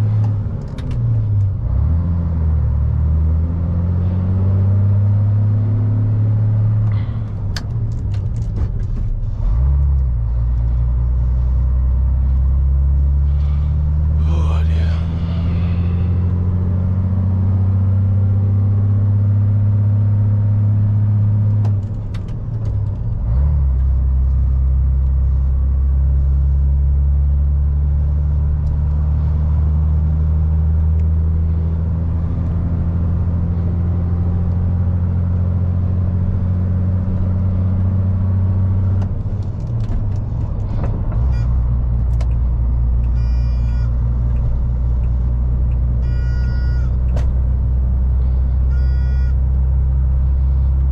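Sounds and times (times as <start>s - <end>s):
lorry diesel engine running: 6.8s - 17.5s, 21.9s - 50.9s.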